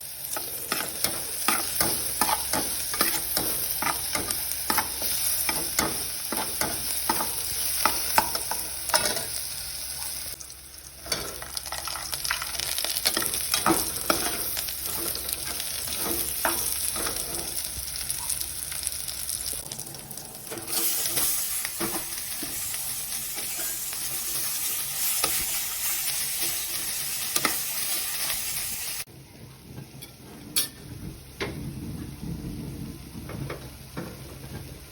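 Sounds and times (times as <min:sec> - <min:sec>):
food sizzling in a pan: 0:00.0 - 0:29.1
utensil scraping a pan: 0:00.3 - 0:09.3, 0:12.7 - 0:17.7, 0:20.5 - 0:22.7.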